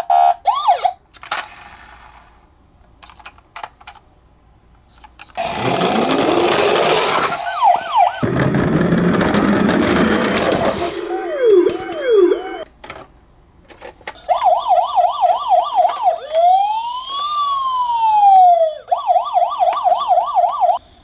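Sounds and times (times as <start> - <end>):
police siren: 0.0 - 1.0, 5.4 - 8.3, 10.1 - 12.6, 14.2 - 20.8.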